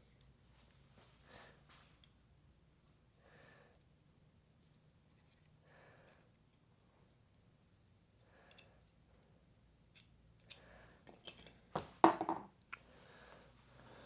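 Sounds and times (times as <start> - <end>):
metal parts and tools clicking: 9.9 - 11.7.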